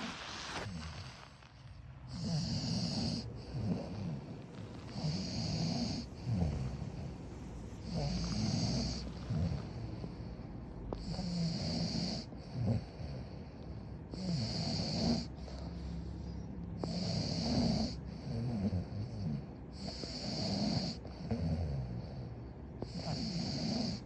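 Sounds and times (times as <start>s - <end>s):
person snoring: 2.1s - 9.8s.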